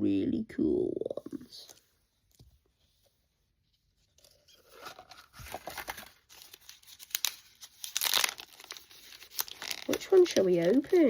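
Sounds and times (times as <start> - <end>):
plastic packaging rustling and tearing: 4.2 - 11.0.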